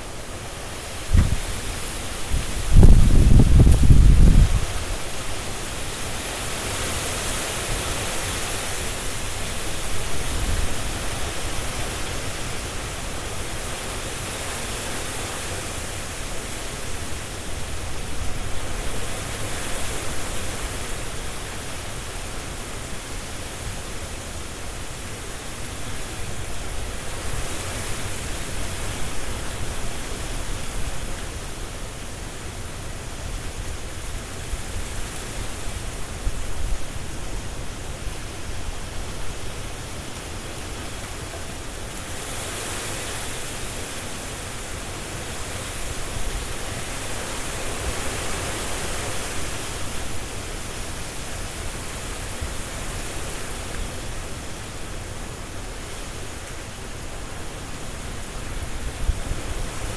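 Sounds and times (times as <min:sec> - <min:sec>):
leaves rustling: 0:00.0 - 0:59.9
wind gusting through trees: 0:00.0 - 0:59.9.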